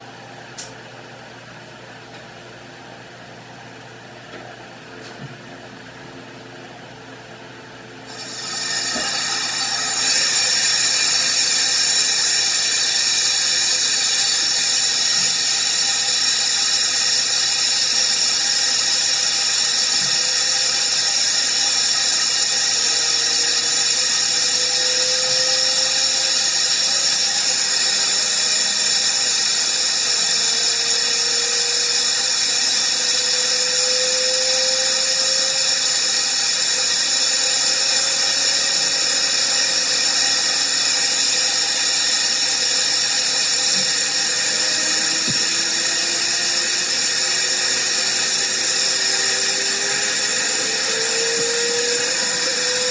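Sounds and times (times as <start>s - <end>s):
turbine whine: 8.0s - 52.9s
faint rising tone: 43.6s - 52.9s.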